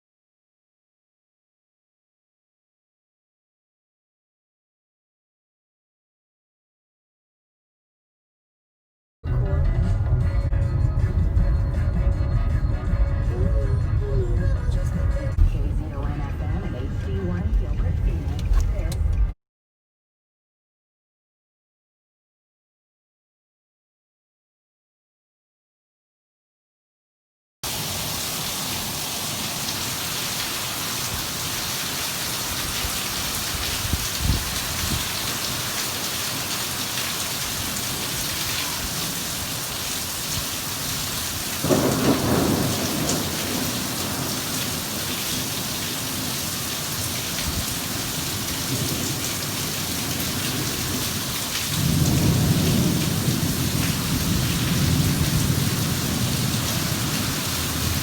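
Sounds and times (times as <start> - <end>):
rain falling: 27.6 - 58.0
thunder crack: 41.6 - 46.3, 51.7 - 58.0
low rumble of thunder: 41.6 - 46.4, 47.2 - 58.0.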